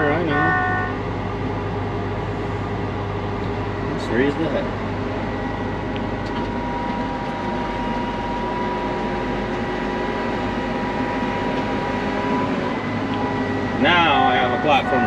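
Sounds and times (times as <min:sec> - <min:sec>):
combine harvester engine running: 0:00.0 - 0:15.0
hydraulic whine: 0:00.0 - 0:15.0.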